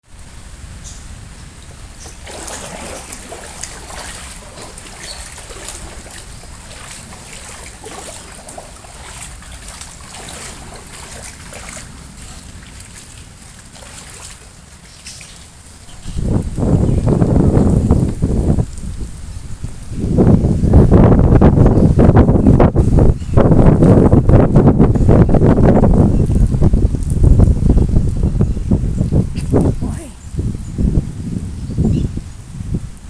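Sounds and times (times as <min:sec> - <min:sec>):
water trickling and splashing: 0:00.1 - 0:22.3.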